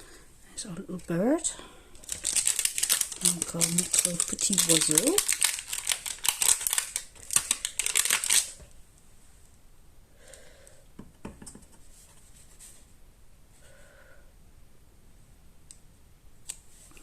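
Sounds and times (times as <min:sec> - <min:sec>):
paper crinkling rustle: 0:01.0 - 0:08.7.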